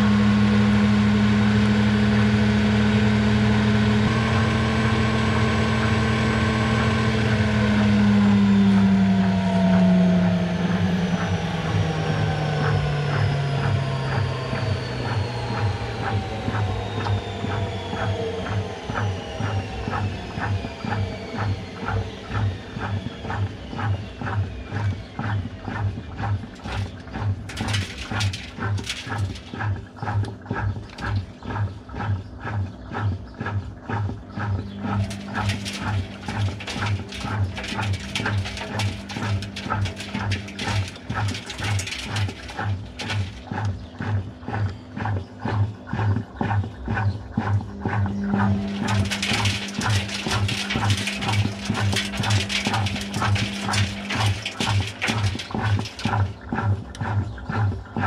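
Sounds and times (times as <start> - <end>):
washing machine motor whine: 0.0 - 58.0
washing machine drum thumping: 34.7 - 44.2, 47.9 - 57.2.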